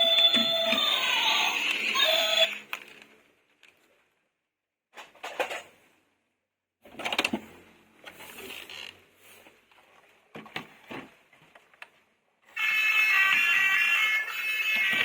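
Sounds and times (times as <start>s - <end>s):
plastic toys and packaging handled: 0.0s - 4.2s, 12.6s - 15.0s.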